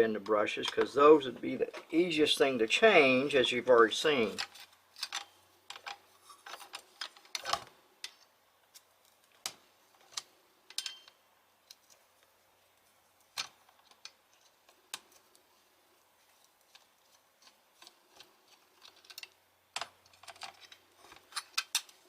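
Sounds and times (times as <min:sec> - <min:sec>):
metal parts and tools clicking: 0:04.2 - 0:07.6, 0:10.0 - 0:11.9, 0:17.4 - 0:22.0.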